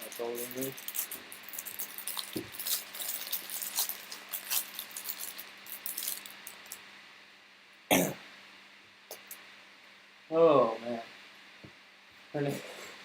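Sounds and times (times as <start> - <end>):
card wrapper crinkling: 0.0 - 6.8.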